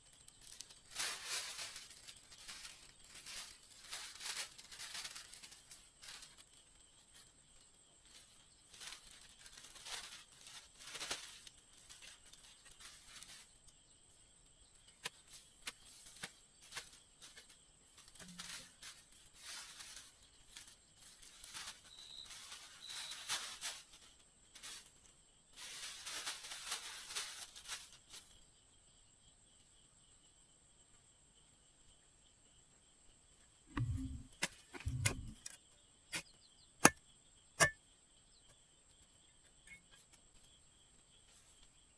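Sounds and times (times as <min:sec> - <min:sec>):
rustling and tearing: 0:00.4 - 0:06.4, 0:33.7 - 0:35.5.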